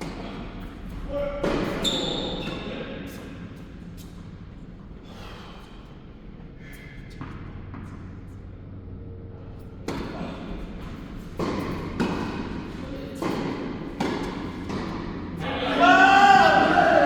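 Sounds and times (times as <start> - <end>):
ball bouncing on court: 0.0 - 2.6, 9.8 - 15.2
tennis ball hits: 1.4 - 1.8, 9.8 - 10.2, 10.9 - 15.2.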